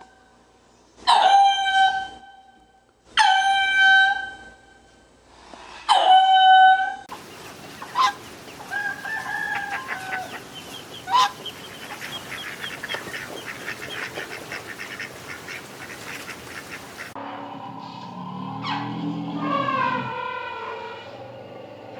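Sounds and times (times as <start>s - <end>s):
hens clucking: 7.1s - 17.2s.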